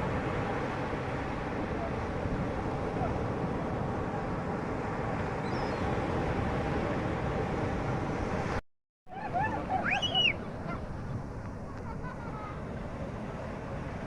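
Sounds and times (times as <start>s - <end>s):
boat engine and water rumble: 0.0s - 14.0s
bird honking calls: 9.2s - 12.5s.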